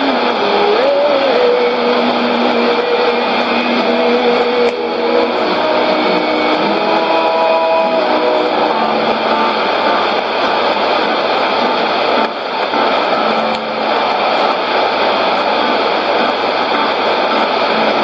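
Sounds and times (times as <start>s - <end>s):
faint radio music: 0.0s - 18.0s
radio static and hiss: 0.0s - 18.0s.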